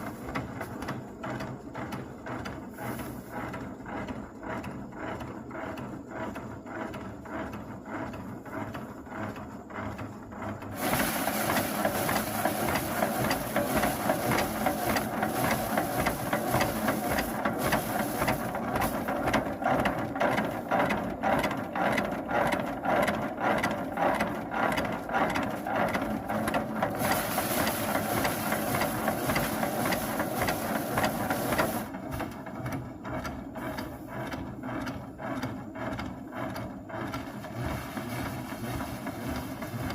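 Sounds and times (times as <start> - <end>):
rice thresher clattering: 0.0 - 3.5, 10.6 - 34.2, 36.9 - 39.9.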